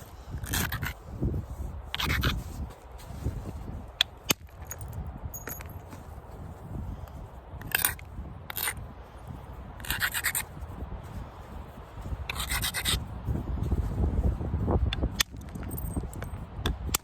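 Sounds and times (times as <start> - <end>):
stone and bone scraping: 0.4 - 1.0, 1.9 - 2.4, 7.6 - 8.8, 9.8 - 10.5, 12.3 - 13.0.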